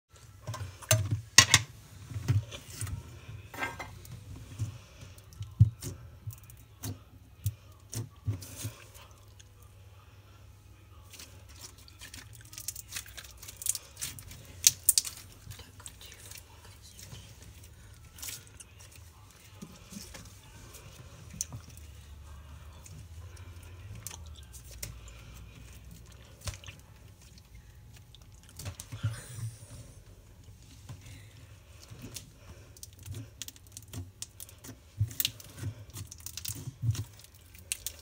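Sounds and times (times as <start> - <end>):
slime clicking and crackling: 11.2 - 20.3, 31.8 - 38.0.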